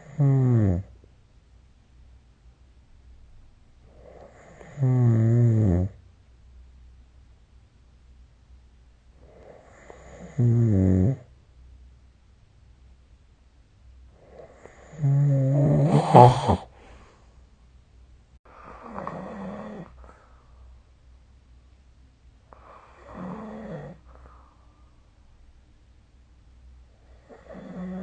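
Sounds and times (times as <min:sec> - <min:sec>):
person snoring with rattle: 0:00.0 - 0:00.9, 0:03.9 - 0:06.0, 0:09.2 - 0:11.3, 0:14.2 - 0:16.7, 0:18.8 - 0:20.0, 0:22.6 - 0:24.1, 0:27.1 - 0:28.0.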